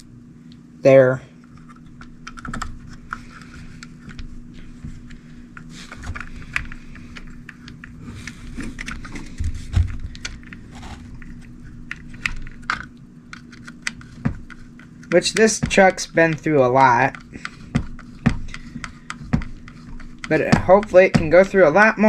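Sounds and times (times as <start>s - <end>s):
plastic parts clicking: 11.2s - 21.8s.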